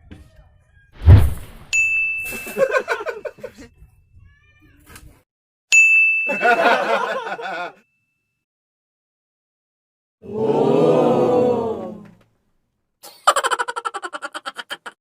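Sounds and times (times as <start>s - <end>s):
bright bell ding: 1.7s - 3.1s, 5.7s - 6.6s.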